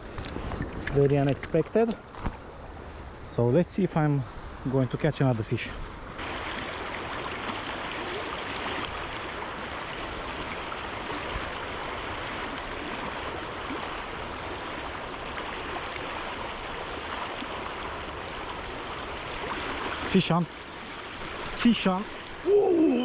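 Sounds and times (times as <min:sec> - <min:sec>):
creek water rushing: 0:06.1 - 0:23.0.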